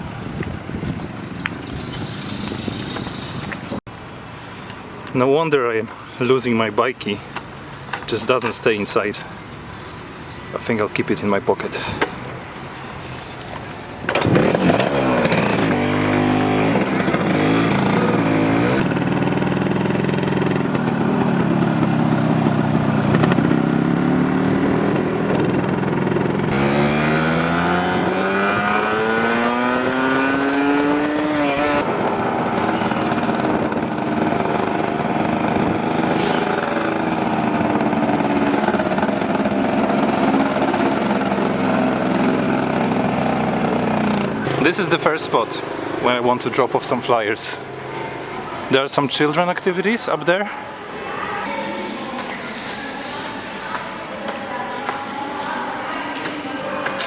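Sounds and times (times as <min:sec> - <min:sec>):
motorbike engine accelerating: 0:00.0 - 0:03.8, 0:14.0 - 0:48.7.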